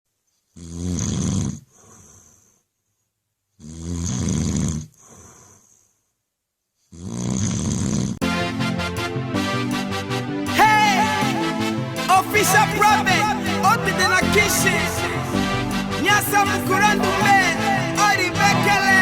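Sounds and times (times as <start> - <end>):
person snoring: 0.5 - 2.6, 3.6 - 6.0, 6.9 - 8.2
soft breath out: 4.9 - 6.1.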